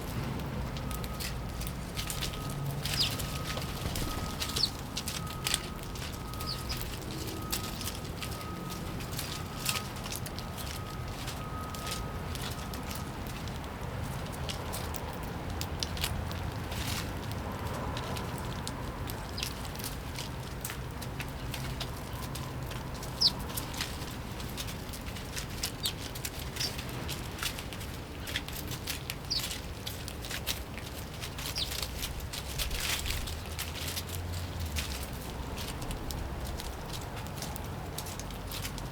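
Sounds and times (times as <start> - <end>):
sparrows chirping: 1.0 - 9.7, 19.2 - 19.9, 21.4 - 27.5, 28.1 - 33.4.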